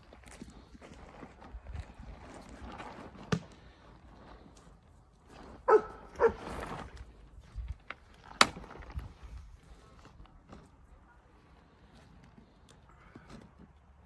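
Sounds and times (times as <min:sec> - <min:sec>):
dog barking: 0:05.7 - 0:06.4.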